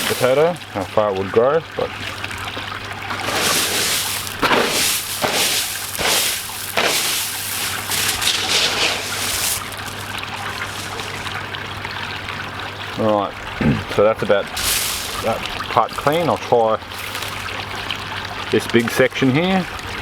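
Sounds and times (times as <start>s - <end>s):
hands digging through wet gravel: 0.0s - 0.7s, 3.1s - 11.4s, 14.5s - 16.3s
water trickling: 0.0s - 20.0s.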